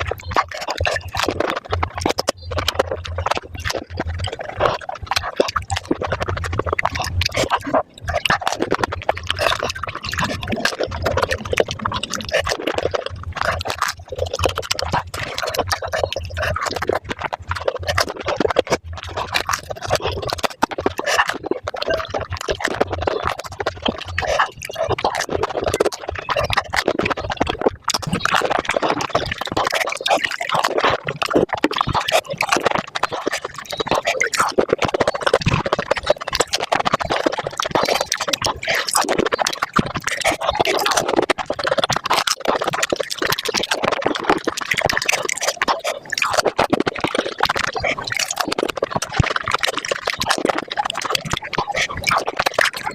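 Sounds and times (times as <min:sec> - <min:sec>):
wet slurping: 0:00.0 - 0:52.9.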